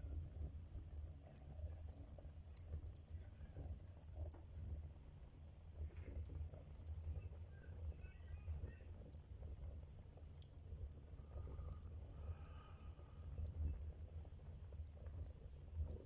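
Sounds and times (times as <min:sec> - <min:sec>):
low fire rumble: 0:00.0 - 0:16.0
wood fire crackling and popping: 0:00.0 - 0:16.0.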